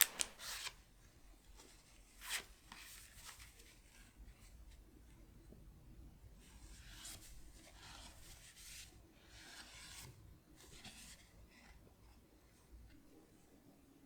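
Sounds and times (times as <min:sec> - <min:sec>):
cards and wrapping rubbing: 0:00.0 - 0:00.8.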